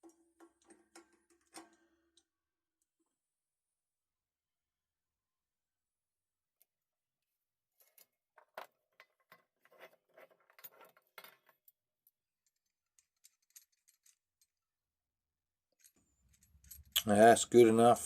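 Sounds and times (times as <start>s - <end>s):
metal tool parts clinking: 12.5s - 14.6s, 15.8s - 17.2s.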